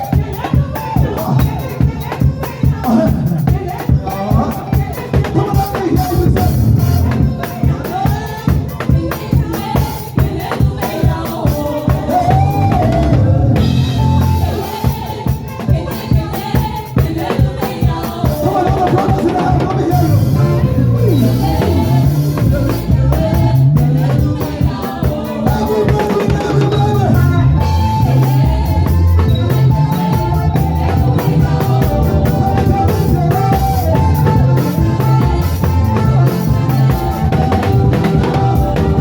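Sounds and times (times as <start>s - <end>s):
drum kit beat: 0.0s - 39.0s
singing: 0.0s - 39.0s
heavy bass line: 6.0s - 7.4s, 12.2s - 14.8s, 18.6s - 24.8s, 25.4s - 39.0s.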